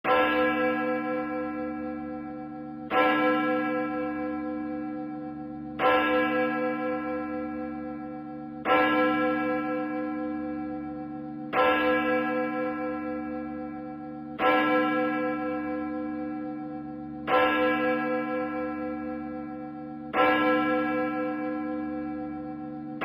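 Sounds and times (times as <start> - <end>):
church bell tolling: 0.0 - 23.0.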